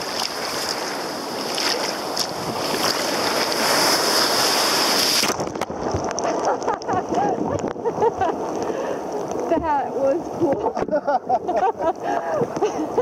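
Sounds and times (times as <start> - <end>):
sea waves rushing: 0.0 - 13.0
wind buffeting microphone: 4.8 - 13.0.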